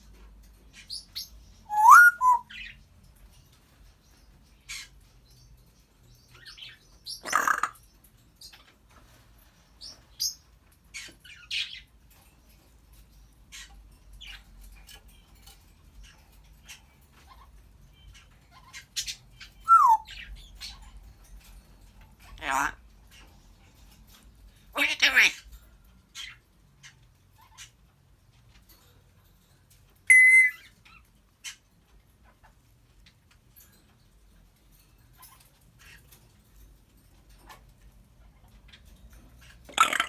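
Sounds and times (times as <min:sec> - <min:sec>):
parrot clicks and chirps: 0:01.7 - 0:02.4, 0:19.7 - 0:20.0, 0:30.1 - 0:30.7, 0:39.7 - 0:40.0
parrot harsh squawk: 0:01.7 - 0:02.5, 0:07.2 - 0:07.8, 0:19.7 - 0:20.0, 0:22.4 - 0:22.8, 0:24.8 - 0:25.4, 0:30.1 - 0:30.6, 0:39.7 - 0:40.0
parrot whistling: 0:01.7 - 0:02.5, 0:19.7 - 0:20.0, 0:30.1 - 0:30.6.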